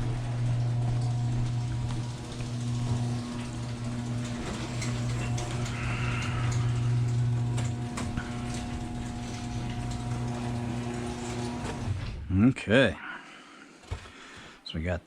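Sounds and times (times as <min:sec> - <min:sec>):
electric motor hum: 0:00.0 - 0:12.0.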